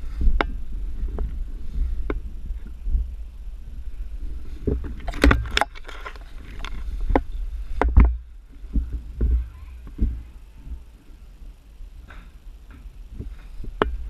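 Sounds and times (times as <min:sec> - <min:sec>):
camera handling rustling: 0:04.8 - 0:07.3.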